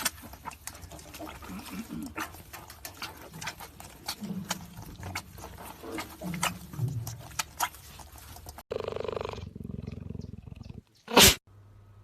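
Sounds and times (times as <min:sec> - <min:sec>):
animal sneezing and snorting: 0:00.0 - 0:08.6, 0:11.1 - 0:11.4
animal low grunts: 0:00.0 - 0:11.4.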